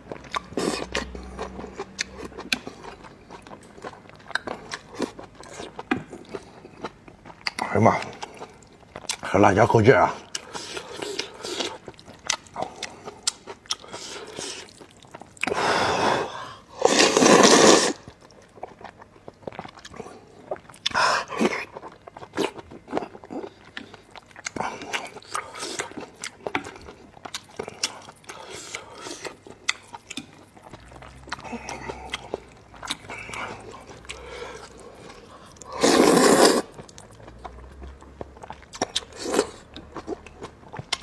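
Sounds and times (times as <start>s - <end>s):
chewing with wet clicks: 0.0s - 15.6s, 18.0s - 35.8s, 36.6s - 41.0s
loud slurps: 15.4s - 18.1s, 33.0s - 36.8s.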